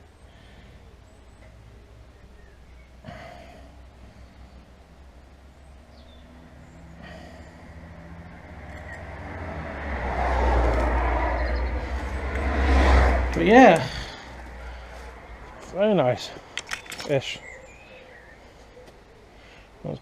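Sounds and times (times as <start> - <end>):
traffic going by: 0.0 - 19.9
low rumble: 7.3 - 15.7.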